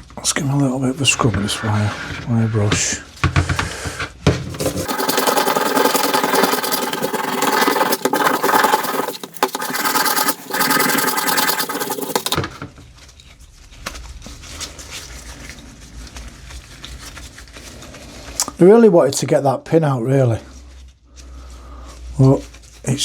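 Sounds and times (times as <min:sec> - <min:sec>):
wire brush scrubbing steel: 0:04.6 - 0:12.4.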